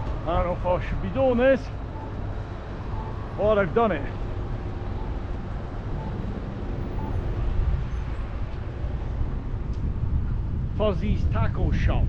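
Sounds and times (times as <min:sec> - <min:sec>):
passing traffic: 0:00.0 - 0:11.9
wind on microphone: 0:04.4 - 0:12.0.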